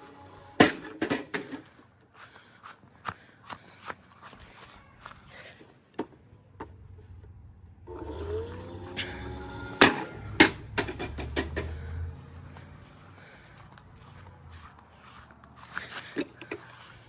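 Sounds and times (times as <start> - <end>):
low hum with pitched tone: 6.3 - 15.4.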